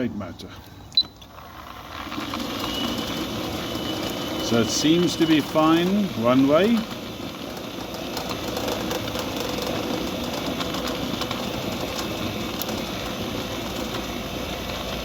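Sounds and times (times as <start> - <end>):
gate motor humming: 2.0 - 15.0.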